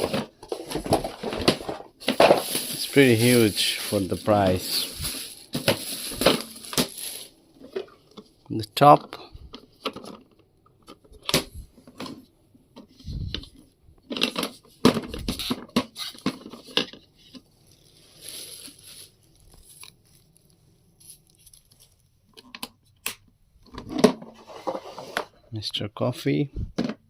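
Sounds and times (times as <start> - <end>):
plastic parts knocking and clicking: 0.0 - 3.9, 12.8 - 17.4, 26.7 - 27.0
rustling: 0.0 - 8.3, 12.9 - 22.1.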